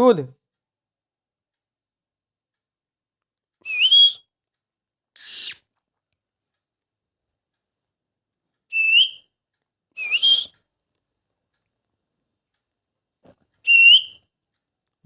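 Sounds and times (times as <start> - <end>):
parakeet calls: 13.7 - 14.2.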